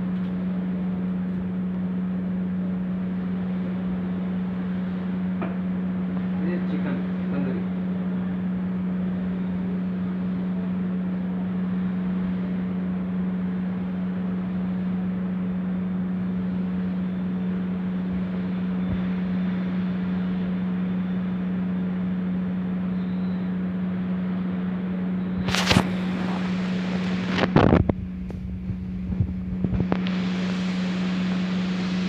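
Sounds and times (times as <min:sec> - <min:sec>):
low machine hum: 0:00.0 - 0:32.0
even hiss: 0:29.2 - 0:32.0.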